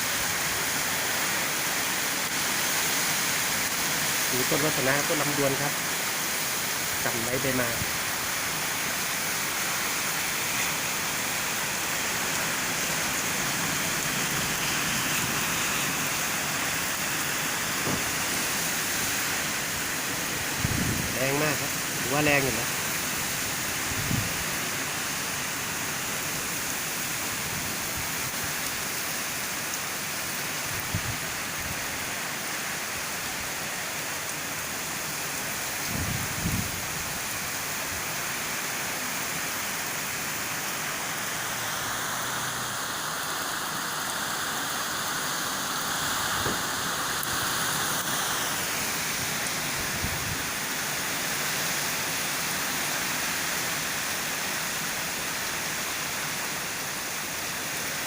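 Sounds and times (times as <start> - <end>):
heavy rain: 0.0 - 58.0
strong wind: 13.2 - 22.1, 23.2 - 24.7, 30.7 - 31.8, 35.8 - 37.2, 45.9 - 50.6.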